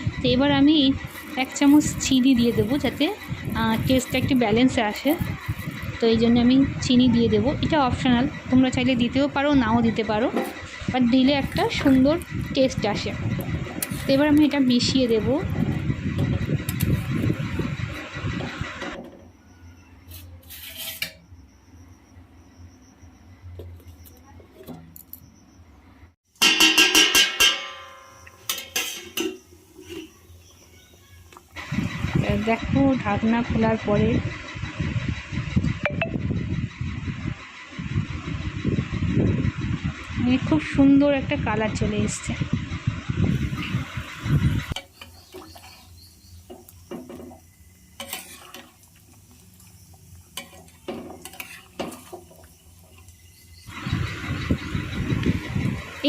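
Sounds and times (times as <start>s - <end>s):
spoon scraping a pan: 1.0s - 5.9s, 13.8s - 15.2s, 20.1s - 21.2s, 28.5s - 30.3s, 44.8s - 53.0s.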